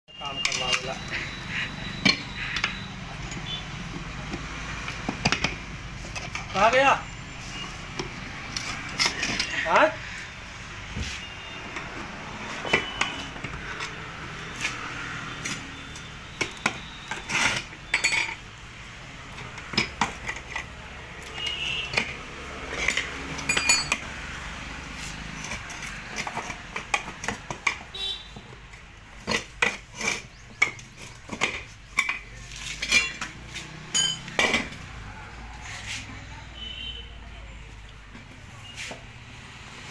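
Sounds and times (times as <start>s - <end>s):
metal tools clanking on metal: 0.2s - 3.6s, 8.5s - 9.7s, 16.4s - 18.5s, 19.3s - 24.1s, 29.2s - 34.8s.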